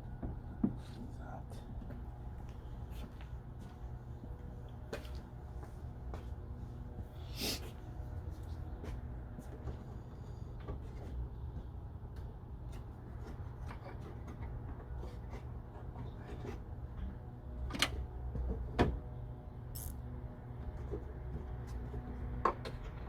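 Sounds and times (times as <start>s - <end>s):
steady low hum: 0.0s - 22.4s
metal tools clicking and knocking: 19.8s - 20.0s.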